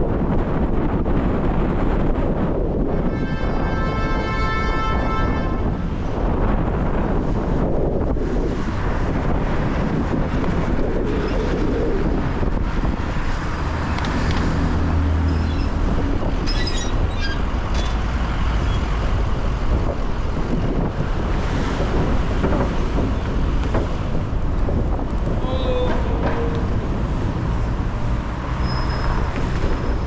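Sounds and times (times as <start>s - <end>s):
engine rumble: 6.0s - 30.0s
short sharp high squeaks: 15.2s - 15.8s, 16.4s - 18.9s, 28.5s - 30.0s.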